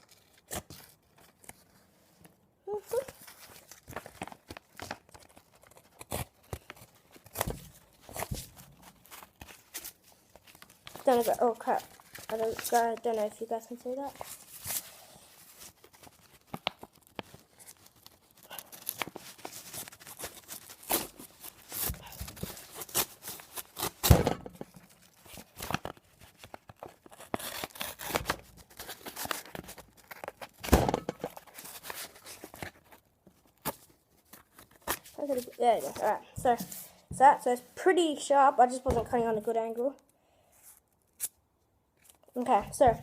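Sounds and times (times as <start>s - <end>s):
paper rustling: 0.0s - 37.0s
handling knocks: 24.1s - 24.7s, 30.7s - 31.3s.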